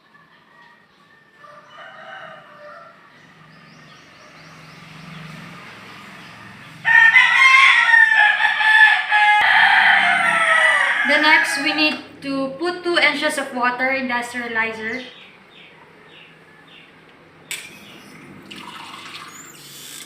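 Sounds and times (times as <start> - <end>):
rooster crowing: 1.3 - 3.6, 6.2 - 12.1.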